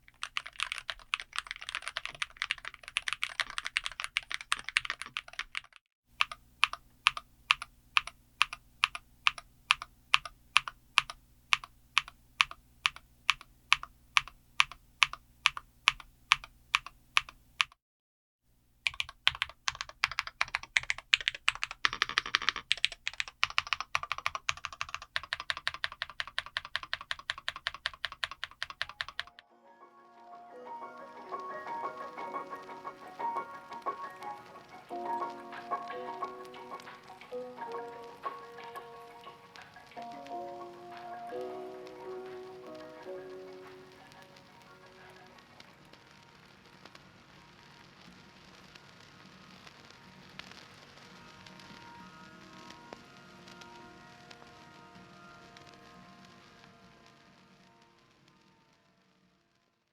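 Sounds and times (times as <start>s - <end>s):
keyboard typing: 0.0s - 17.8s, 18.8s - 29.4s.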